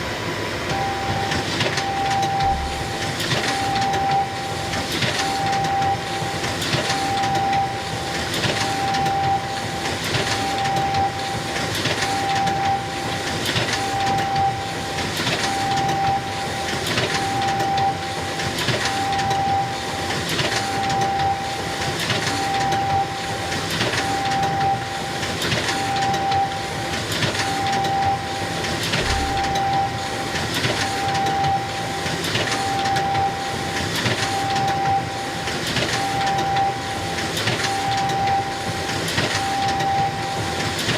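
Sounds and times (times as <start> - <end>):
photocopier running: 0.0 - 40.9
short tone: 0.7 - 4.5, 29.0 - 30.2.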